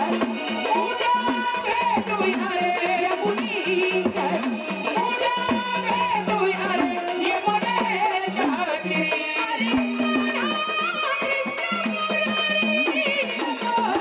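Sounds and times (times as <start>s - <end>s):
hand drums beating: 0.0s - 14.0s.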